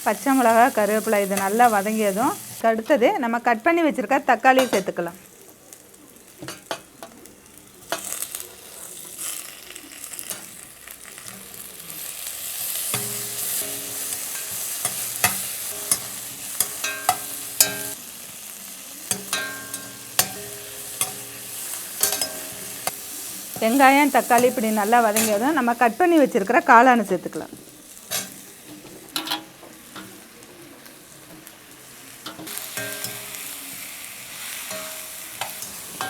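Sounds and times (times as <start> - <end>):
vegetables sizzling in hot oil: 0.0 - 36.0
spoon knocking against pan: 12.9 - 18.0, 19.1 - 23.0.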